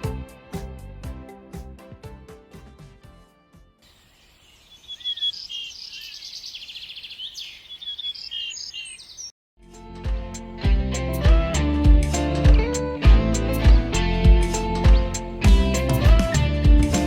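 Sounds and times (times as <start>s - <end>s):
music: 0.0s - 3.8s, 9.6s - 17.0s
songbirds chirping and calling: 3.8s - 9.4s
rapid bird trill: 3.9s - 9.3s.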